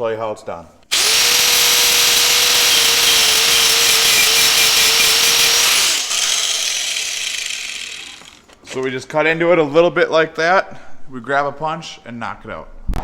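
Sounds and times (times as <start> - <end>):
angle grinder grinding metal: 0.9 - 8.7.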